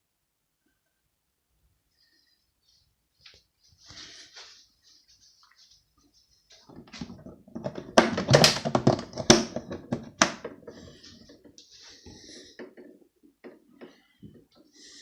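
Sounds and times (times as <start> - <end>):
hard plastic clicks and knocks: 7.1 - 10.6.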